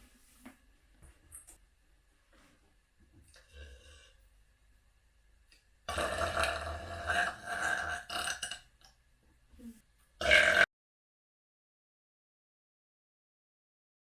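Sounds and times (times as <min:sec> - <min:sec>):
long burp: 0:05.9 - 0:08.7, 0:10.2 - 0:10.7.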